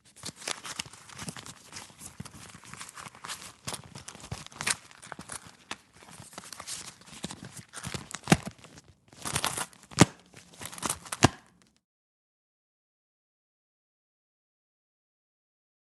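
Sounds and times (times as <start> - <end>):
rustle of leather and paper money: 0.0 - 11.6.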